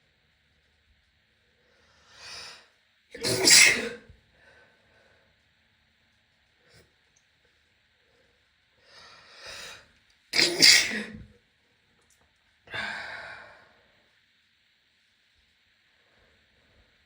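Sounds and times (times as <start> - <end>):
woman sneezing: 3.2 - 4.0, 10.4 - 11.2.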